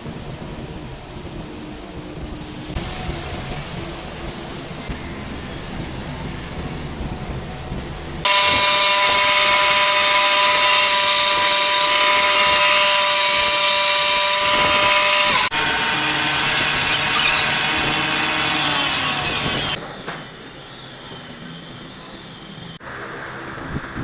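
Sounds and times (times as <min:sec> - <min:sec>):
power tool whining: 0:08.3 - 0:19.8.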